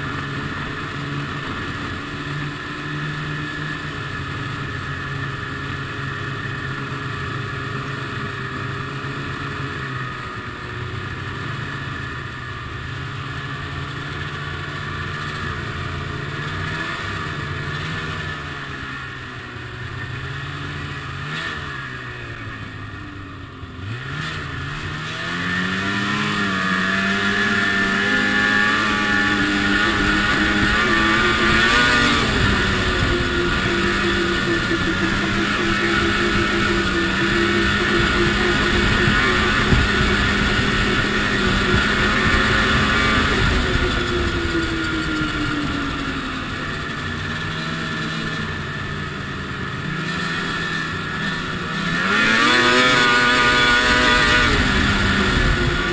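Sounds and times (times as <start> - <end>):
snowmobile engine running: 0.0 - 55.9.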